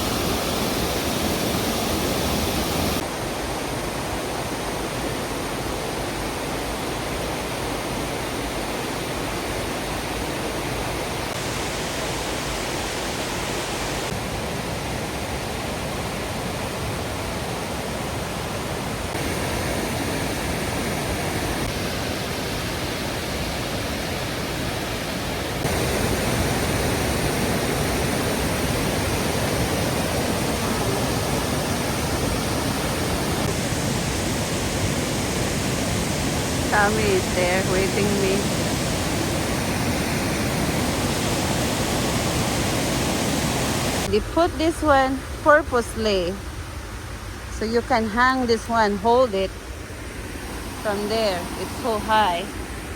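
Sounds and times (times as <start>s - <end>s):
waterfall roaring: 0.0s - 52.9s.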